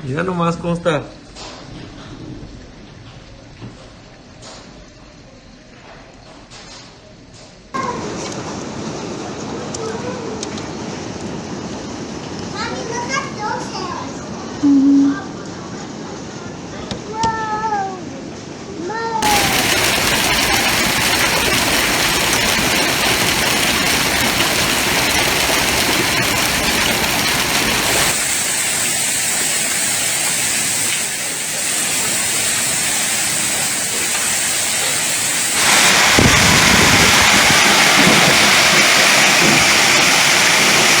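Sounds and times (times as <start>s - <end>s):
hail and heavy rain pelting: 19.2s - 41.0s.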